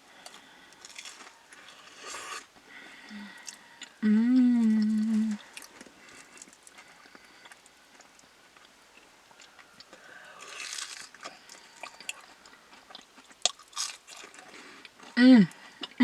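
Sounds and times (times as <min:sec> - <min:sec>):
person chewing and biting: 0:00.1 - 0:02.6, 0:05.4 - 0:15.2
soft rustle: 0:05.0 - 0:09.8.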